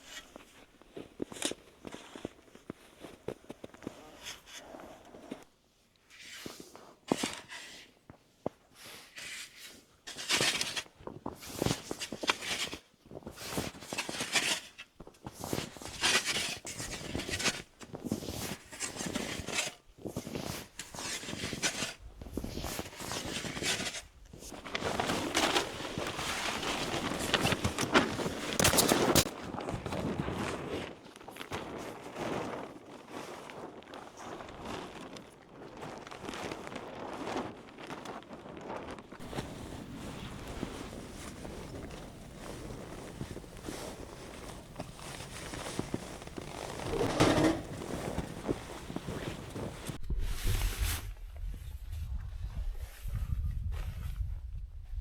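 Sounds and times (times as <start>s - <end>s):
footsteps crunching in snow: 22.4s - 50.0s.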